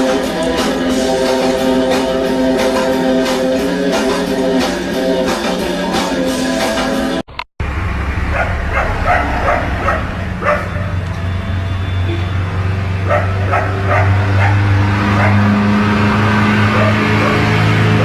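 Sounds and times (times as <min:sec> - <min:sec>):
dog barking: 0:08.3 - 0:11.0, 0:13.0 - 0:15.6, 0:16.7 - 0:18.0.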